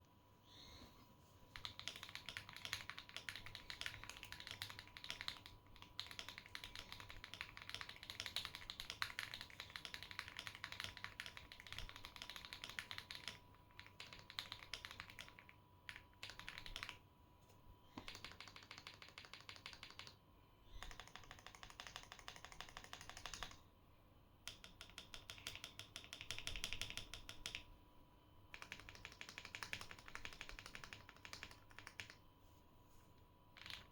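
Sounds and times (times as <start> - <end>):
typing on mechanical keyboard: 1.5 - 17.0, 18.0 - 20.2, 20.8 - 23.6, 24.4 - 27.7, 28.5 - 32.2, 33.6 - 33.9.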